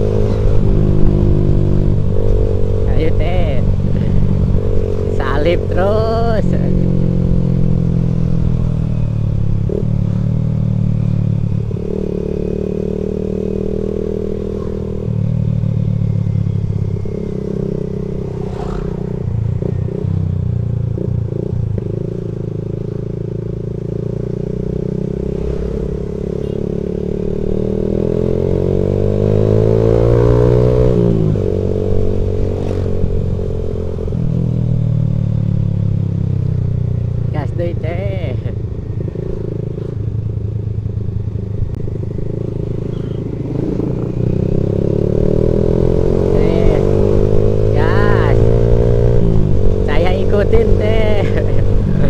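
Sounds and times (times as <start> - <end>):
vehicle engine revving: 9.4 - 23.2, 24.0 - 34.8, 42.1 - 52.0.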